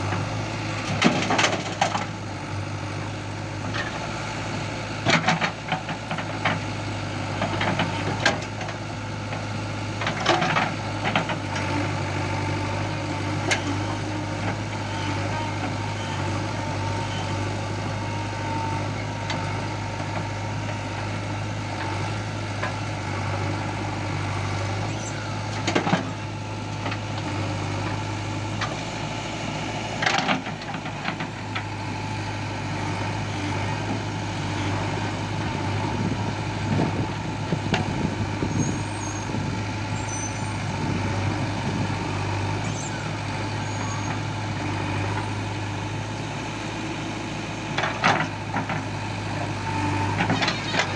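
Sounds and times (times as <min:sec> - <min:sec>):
diesel engine running: 0:00.0 - 0:50.9.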